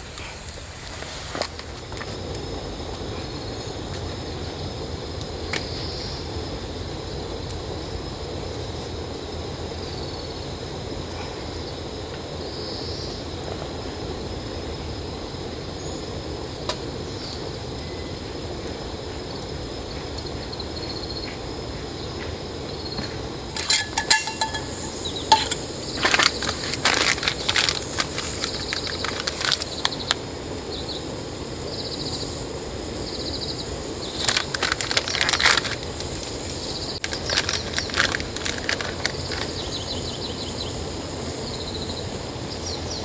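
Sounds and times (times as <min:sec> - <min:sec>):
outdoor background hiss: 0:00.0 - 0:43.0
light metallic clinks: 0:23.6 - 0:28.3.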